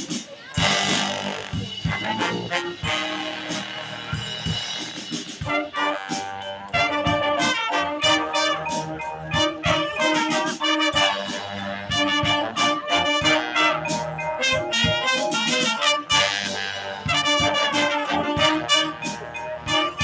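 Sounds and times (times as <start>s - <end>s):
trumpets and trombones: 0.4s - 20.0s
drum hits: 14.0s - 16.2s.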